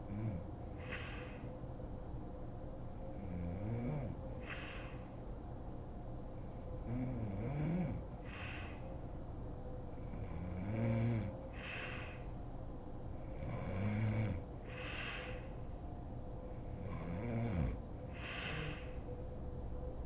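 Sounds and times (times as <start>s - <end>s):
woman snoring: 6.9s - 8.8s, 10.2s - 12.2s, 13.4s - 15.4s, 16.8s - 19.0s.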